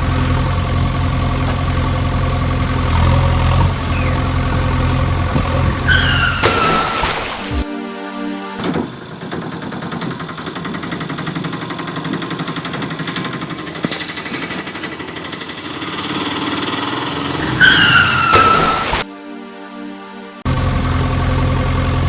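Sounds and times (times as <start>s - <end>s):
vehicle engine running: 0.0s - 7.6s, 8.6s - 19.0s, 20.5s - 22.0s
short falling squeal: 3.8s - 4.4s, 5.8s - 7.6s, 15.7s - 19.1s.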